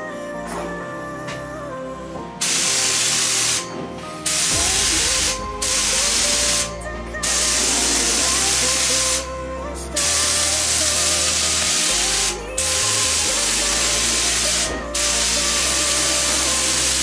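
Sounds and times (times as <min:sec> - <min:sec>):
faint background music: 0:00.0 - 0:17.0
paint spray gun hissing: 0:02.4 - 0:03.7, 0:04.3 - 0:09.3, 0:10.0 - 0:17.0.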